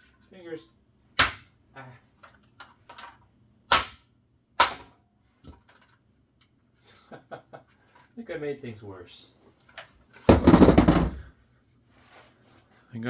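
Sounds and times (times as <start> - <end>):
plastic case whacking floor: 10.2 - 11.3.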